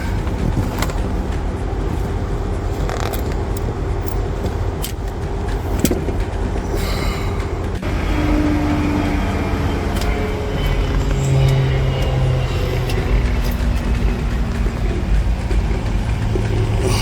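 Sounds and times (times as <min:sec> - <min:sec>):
car engine low rumble: 0:00.0 - 0:17.0.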